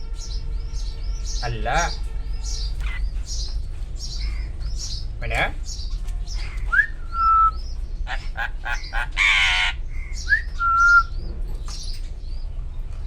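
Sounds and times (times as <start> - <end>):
harsh rasping bird call: 0.0 - 5.0, 5.7 - 11.2
bird clicks and chirps: 2.7 - 3.6
myna whistling: 6.7 - 7.7, 10.2 - 11.2.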